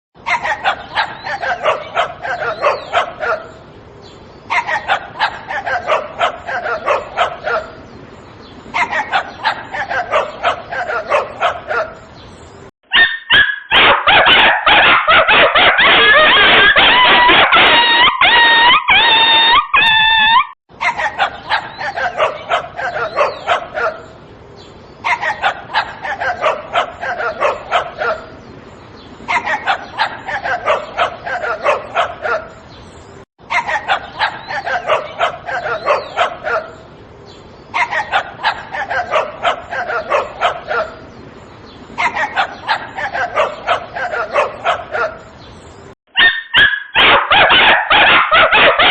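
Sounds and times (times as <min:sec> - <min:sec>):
shrill dog yelps: 0:00.2 - 0:03.5, 0:04.5 - 0:07.8, 0:08.7 - 0:12.0, 0:12.9 - 0:24.0, 0:25.0 - 0:28.3, 0:29.3 - 0:32.5, 0:33.5 - 0:36.8, 0:37.7 - 0:41.0, 0:42.0 - 0:45.2, 0:46.1 - 0:48.9
small dog yapping: 0:00.3 - 0:03.5, 0:12.9 - 0:24.0, 0:29.3 - 0:32.5, 0:33.5 - 0:36.8, 0:37.8 - 0:41.0, 0:42.0 - 0:45.2, 0:46.2 - 0:48.9.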